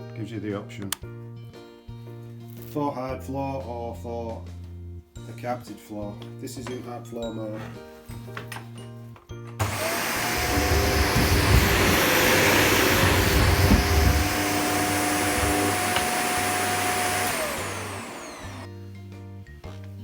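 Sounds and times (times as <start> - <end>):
vacuum cleaner motor whine: 9.6 - 18.7.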